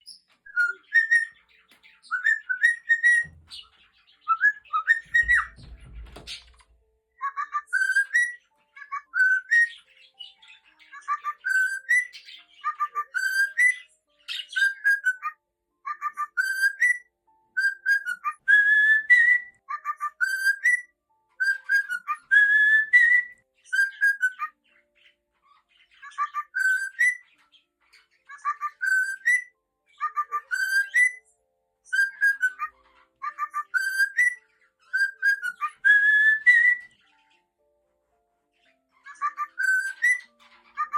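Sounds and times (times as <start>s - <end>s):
cockatiel whistling: 0.0s - 6.6s, 7.2s - 9.9s, 10.9s - 24.6s, 26.0s - 27.3s, 28.3s - 31.3s, 31.9s - 37.0s, 39.0s - 40.9s.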